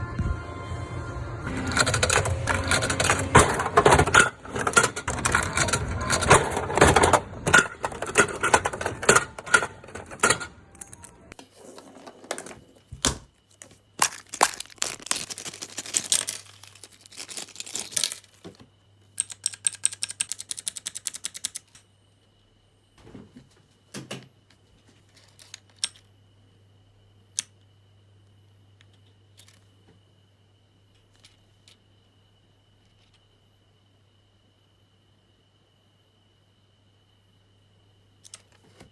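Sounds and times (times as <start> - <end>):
plastic parts rattling: 1.7 - 21.8, 25.1 - 26.0, 31.1 - 31.8, 38.2 - 38.9
fast run of plastic clicks: 19.2 - 21.8.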